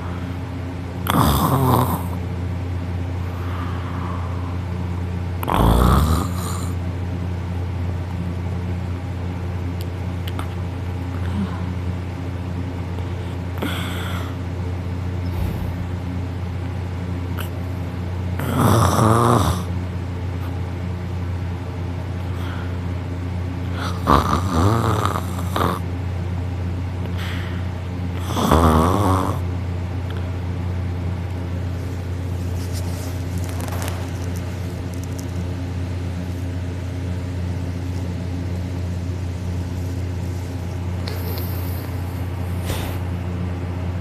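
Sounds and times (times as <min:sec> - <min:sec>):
steady background hum: 0:00.0 - 0:44.0
person snoring loudly: 0:01.0 - 0:02.2, 0:05.4 - 0:06.8, 0:18.4 - 0:19.7, 0:23.7 - 0:25.8, 0:28.2 - 0:29.4.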